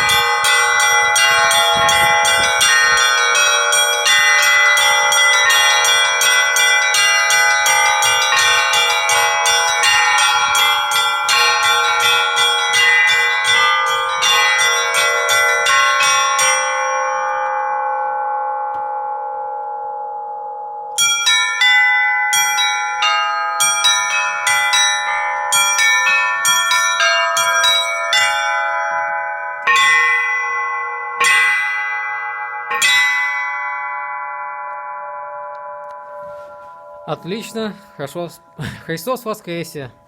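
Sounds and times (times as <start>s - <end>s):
church bells rung by hand: 0.0s - 40.0s.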